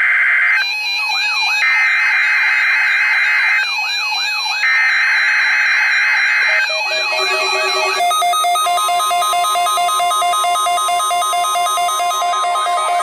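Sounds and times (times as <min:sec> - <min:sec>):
rising and falling alert tone: 0:06.4 - 0:08.5
screechy digital data tones: 0:06.4 - 0:09.0.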